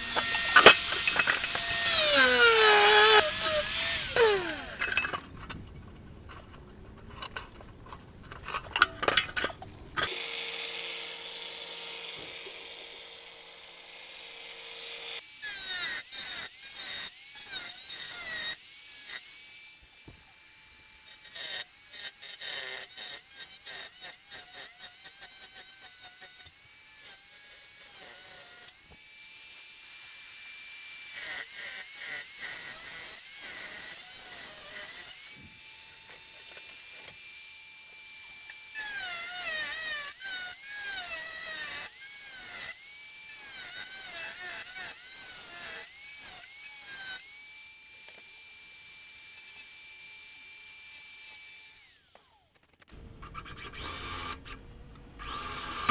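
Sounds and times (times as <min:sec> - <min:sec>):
power tool motor whining: 0:00.0 - 0:12.8, 0:53.0 - 0:55.9.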